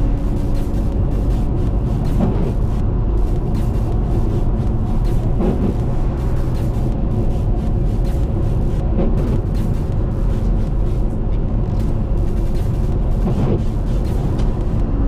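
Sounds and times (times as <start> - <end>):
car rumble on highway: 0.0 - 15.0.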